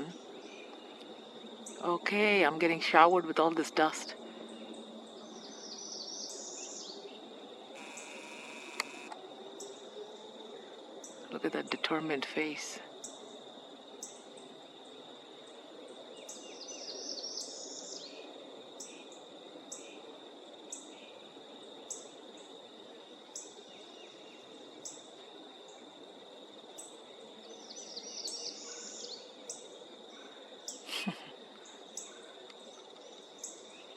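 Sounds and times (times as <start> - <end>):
high insect drone: 7.4 - 10.5.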